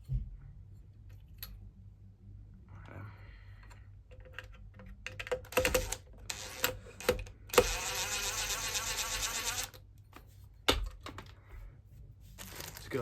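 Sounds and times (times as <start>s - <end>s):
electric drill-driver running: 5.7s - 9.8s.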